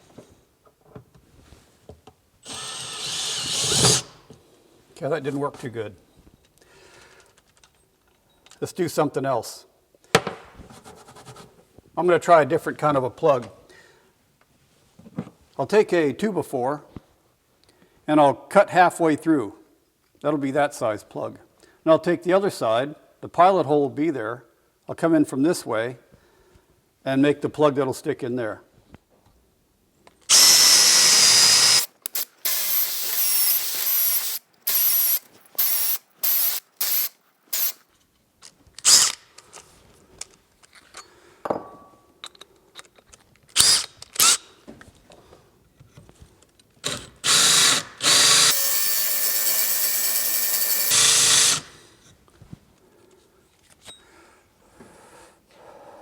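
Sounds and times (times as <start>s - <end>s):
power drill cutting wood: 2.4s - 4.2s, 30.3s - 37.8s, 46.9s - 51.7s.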